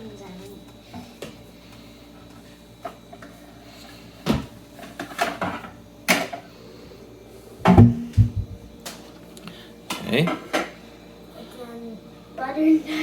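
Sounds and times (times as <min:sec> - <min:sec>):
cupboard and dishes knocking: 0:07.6 - 0:08.7.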